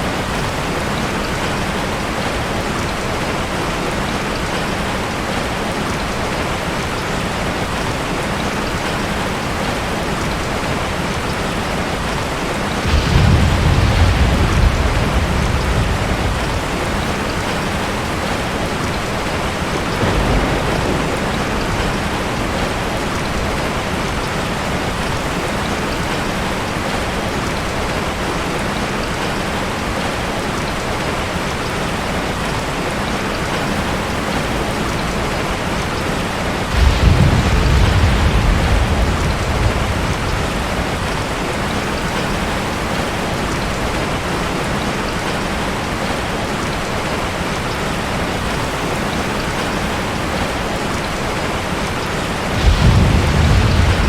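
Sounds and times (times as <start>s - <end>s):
steady rain: 0.0s - 54.0s
thunder rumble: 12.7s - 26.2s, 36.2s - 44.1s, 52.3s - 54.0s.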